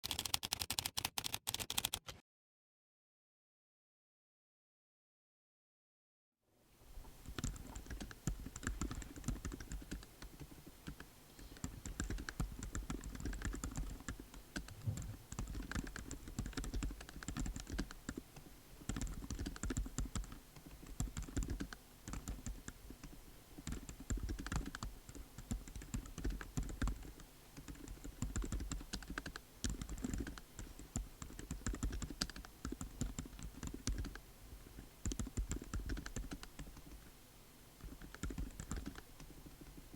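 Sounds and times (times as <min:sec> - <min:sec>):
typing on mechanical keyboard: 0:00.0 - 0:02.2, 0:07.3 - 0:11.0, 0:11.6 - 0:18.2, 0:18.8 - 0:34.2, 0:35.0 - 0:36.9, 0:37.8 - 0:39.7.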